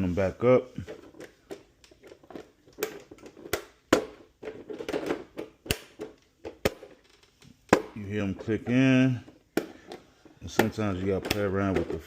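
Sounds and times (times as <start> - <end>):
hard plastic clicks and knocks: 8.6 - 12.0.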